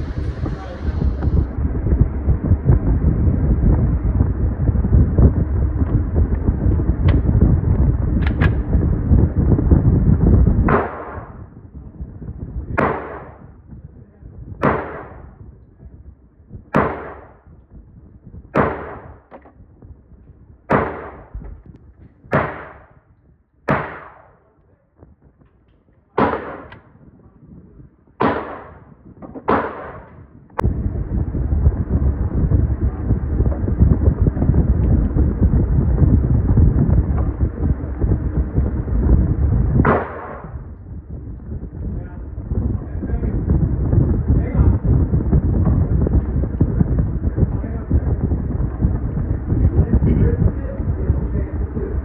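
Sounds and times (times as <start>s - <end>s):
wind rumbling on microphone: 0.0s - 52.0s
gunshots with echo: 10.7s - 11.5s, 12.8s - 13.4s, 14.6s - 15.3s, 16.7s - 17.4s, 18.6s - 19.2s, 20.7s - 21.4s, 22.3s - 22.9s, 23.7s - 24.4s, 26.2s - 26.8s, 28.2s - 28.9s, 29.5s - 30.2s, 39.8s - 40.6s.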